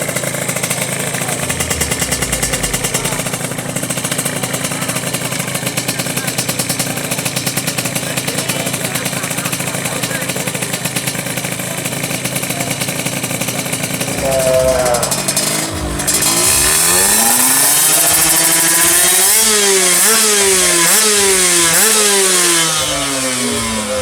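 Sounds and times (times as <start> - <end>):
motorcycle engine revving: 0.9 - 4.5, 14.0 - 20.2.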